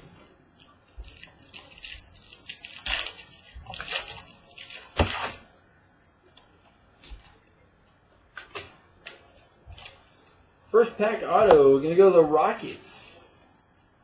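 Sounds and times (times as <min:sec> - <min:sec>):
plastic packaging crinkling and tearing: 0:00.6 - 0:05.5.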